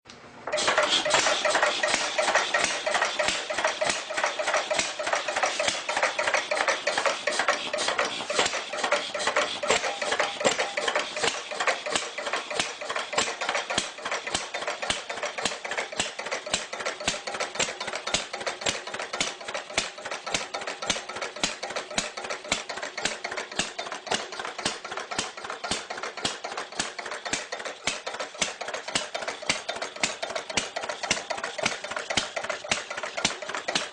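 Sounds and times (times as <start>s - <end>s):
old engine idling with clatter: 0.4s - 33.9s.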